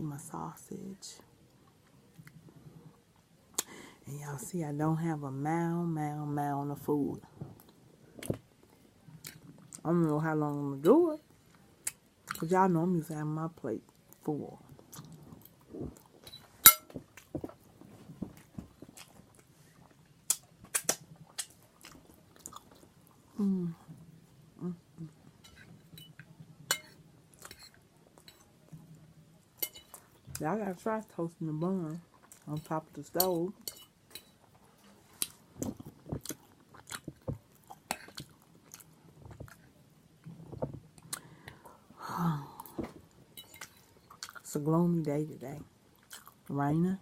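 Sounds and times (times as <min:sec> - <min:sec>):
chewing: 0:14.1 - 0:16.5, 0:17.2 - 0:23.3, 0:34.1 - 0:41.3, 0:43.4 - 0:44.4, 0:46.0 - 0:46.5
lip smacks: 0:20.3 - 0:22.8.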